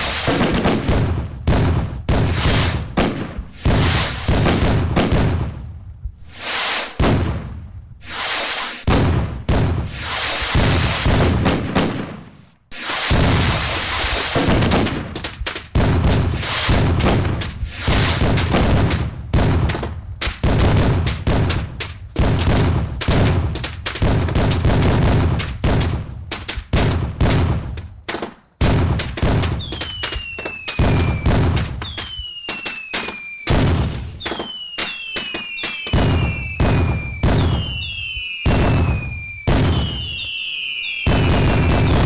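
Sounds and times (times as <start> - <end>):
falling firework whistles: 0.0 - 0.6, 2.2 - 2.9, 3.5 - 4.8, 6.2 - 7.2, 8.0 - 9.0, 9.7 - 11.4, 12.7 - 14.8, 16.2 - 18.6, 29.5 - 42.0
fireworks bangs and booms: 0.0 - 42.0.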